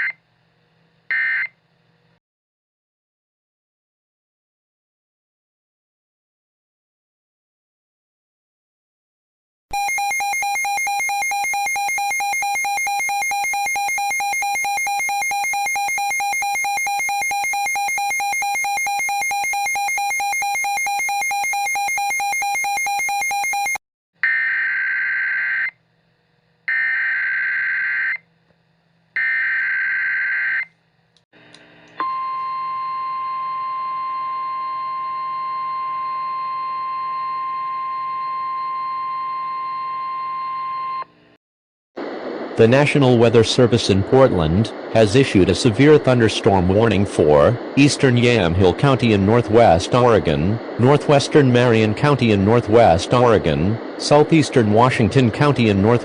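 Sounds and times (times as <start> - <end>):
steady single-pitch alarm tone: 9.7 - 25.8, 26.7 - 28.2, 32.0 - 41.1
harsh buzzing electronic alert tone: 9.8 - 23.8.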